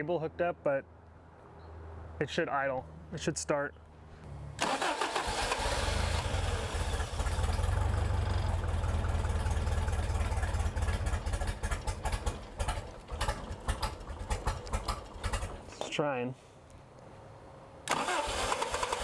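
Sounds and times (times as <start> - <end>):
engine cranking on starter: 4.6 - 15.8, 17.9 - 19.0.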